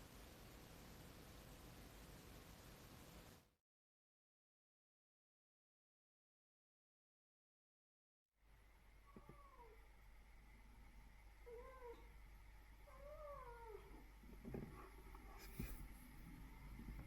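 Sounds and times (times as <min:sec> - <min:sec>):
cat meowing: 0:09.1 - 0:09.8, 0:11.4 - 0:12.1, 0:12.9 - 0:14.0.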